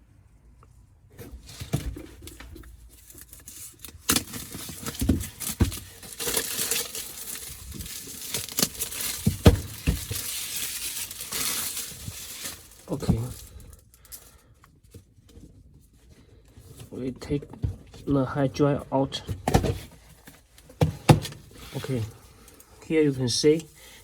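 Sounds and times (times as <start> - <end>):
packaging rustling: 1.3 - 13.8.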